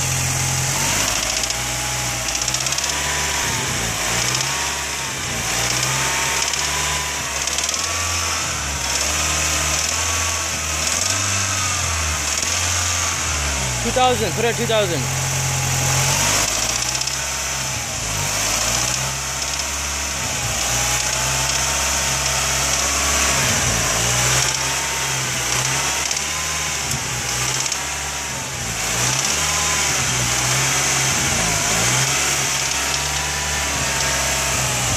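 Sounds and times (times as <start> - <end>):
car engine revving steadily: 0.0 - 34.9
intermittent clicking: 0.9 - 3.2, 3.8 - 4.6, 5.4 - 8.2, 8.8 - 10.2, 10.8 - 11.4, 12.2 - 12.8, 16.0 - 17.3, 18.2 - 27.9, 28.8 - 34.9.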